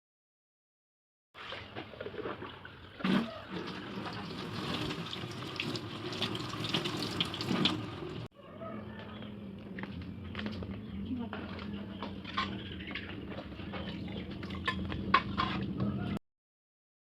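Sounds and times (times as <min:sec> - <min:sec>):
tap water running: 0:02.4 - 0:08.3.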